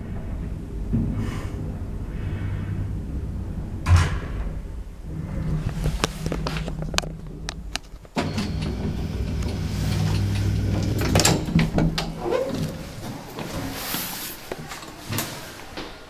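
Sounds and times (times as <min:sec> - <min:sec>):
lift motor hum: 0:00.0 - 0:13.8
lift clicks and knocks: 0:06.0 - 0:13.5.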